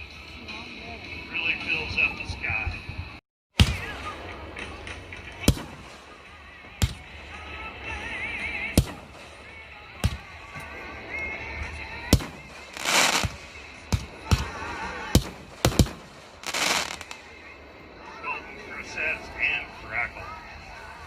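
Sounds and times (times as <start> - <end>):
firework bangs: 3.6 - 4.8, 5.4 - 7.2, 8.8 - 10.5, 12.0 - 17.4
firework crackling: 3.6 - 18.2.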